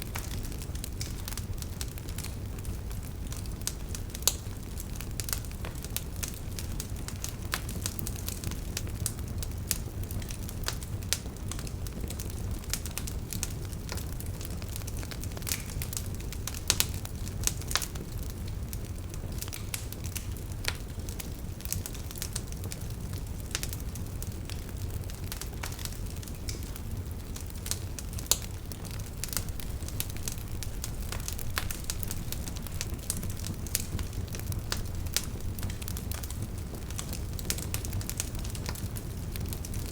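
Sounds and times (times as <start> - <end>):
wood fire crackling: 0.0 - 39.9.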